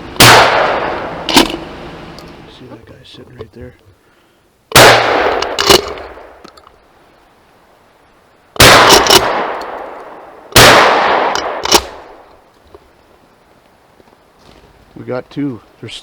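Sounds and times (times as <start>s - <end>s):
gunshots echoing: 0.2s - 1.7s, 4.7s - 6.4s, 8.6s - 12.3s
sharp gun click: 11.2s - 12.0s.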